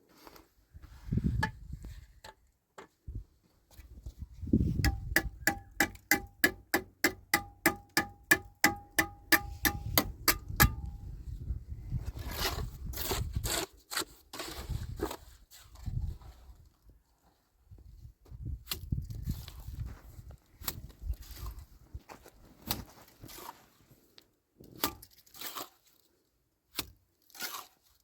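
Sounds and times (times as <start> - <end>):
hammer blows on metal: 4.8 - 11.0
rough scraping: 11.9 - 16.4, 20.7 - 23.9.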